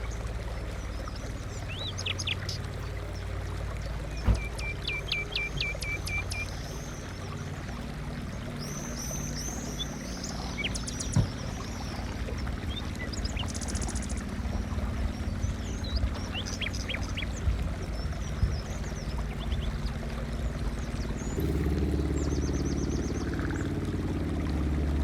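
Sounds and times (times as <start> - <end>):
songbirds chirping and trilling: 0.0 - 24.0
low engine hum: 0.0 - 25.0.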